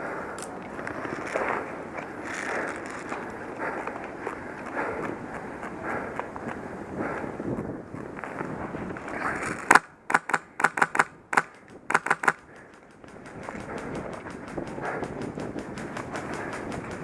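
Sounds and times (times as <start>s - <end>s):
rustling movement: 0.4s - 4.8s
airsoft rifle shots: 9.7s - 12.4s.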